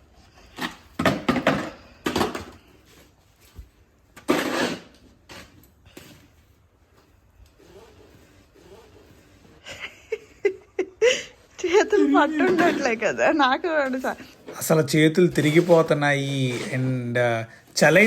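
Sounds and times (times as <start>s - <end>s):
snow shovel scraping on concrete: 4.2s - 6.3s, 12.0s - 17.4s.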